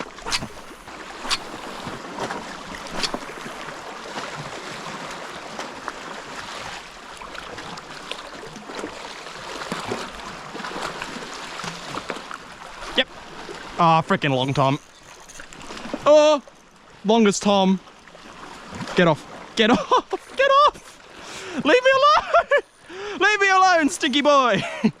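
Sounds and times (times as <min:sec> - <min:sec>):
sea water lapping on rocks: 0:00.0 - 0:17.0.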